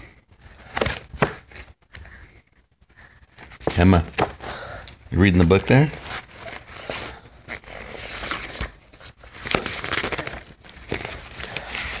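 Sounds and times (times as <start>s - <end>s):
rustling and crinkling: 3.3s - 12.0s.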